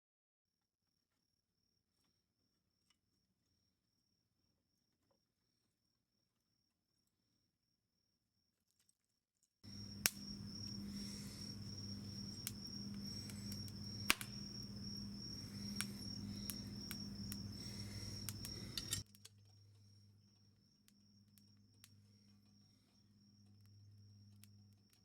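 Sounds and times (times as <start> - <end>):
crickets trilling: 9.7 - 19.0, 19.6 - 25.0
low hum: 9.7 - 19.0
wood fire crackling: 9.7 - 19.1.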